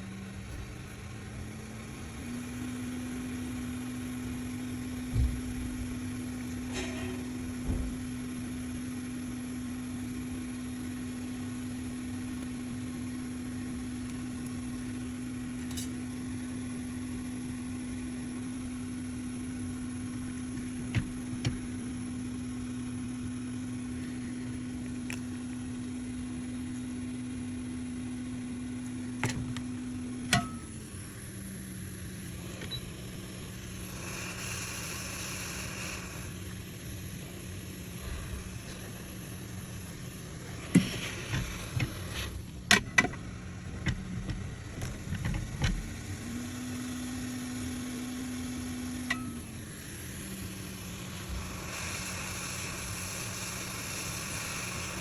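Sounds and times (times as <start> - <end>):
hot air blower humming: 0.0 - 55.0
short hiss: 33.7 - 36.5, 37.8 - 42.6, 49.2 - 55.0.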